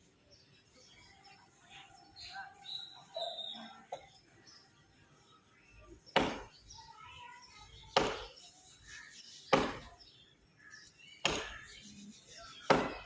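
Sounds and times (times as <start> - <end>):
axe chopping into wood: 6.1 - 6.5, 8.0 - 8.4, 9.5 - 10.0, 11.2 - 11.5, 12.6 - 13.0.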